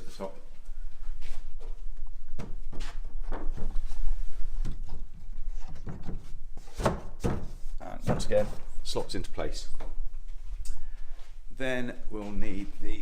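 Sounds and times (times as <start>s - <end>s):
wooden panel knocking and scraping: 4.6s - 8.6s.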